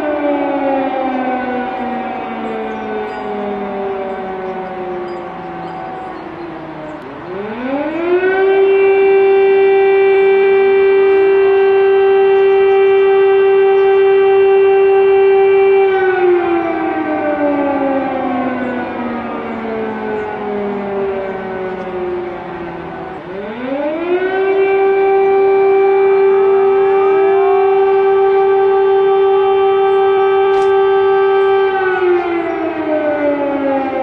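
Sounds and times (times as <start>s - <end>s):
air-raid siren wailing: 0.0s - 34.0s.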